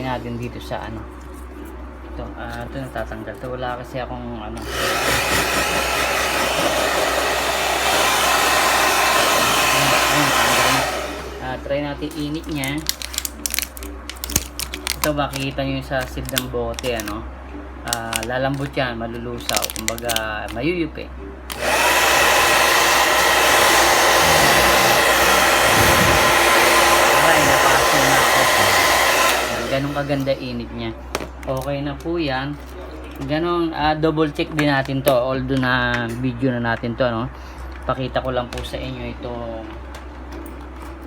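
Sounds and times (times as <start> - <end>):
hot-air blower running: 4.6 - 13.6, 21.5 - 30.8.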